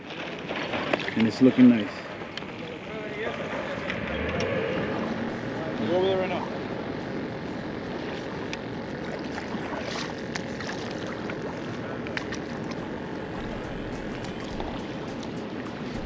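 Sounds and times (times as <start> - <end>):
water sloshing and splashing: 0.0 - 2.4, 6.3 - 16.0
low rumble: 13.4 - 15.3.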